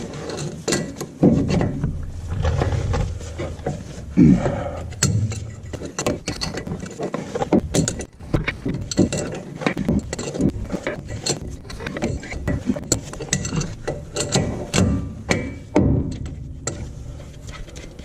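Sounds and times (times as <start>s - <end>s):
metal tools clinking: 4.8s - 15.7s.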